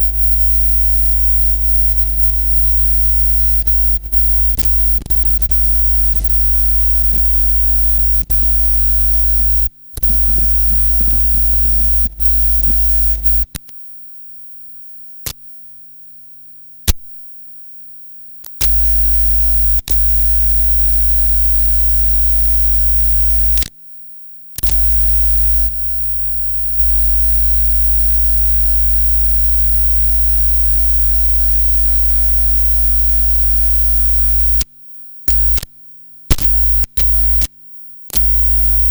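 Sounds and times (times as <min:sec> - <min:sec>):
plug clicks and crackles: 0:09.9 - 0:11.1, 0:24.6 - 0:25.7, 0:36.3 - 0:37.5, 0:38.1 - 0:38.9.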